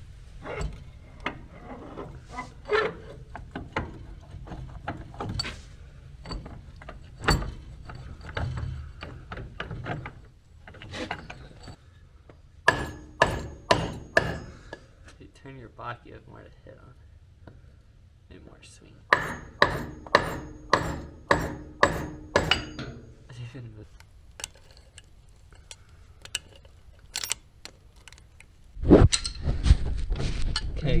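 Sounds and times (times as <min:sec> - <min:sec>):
metal parts clinking: 0:00.2 - 0:11.8, 0:19.1 - 0:29.4
hammer blows on metal: 0:19.1 - 0:23.3.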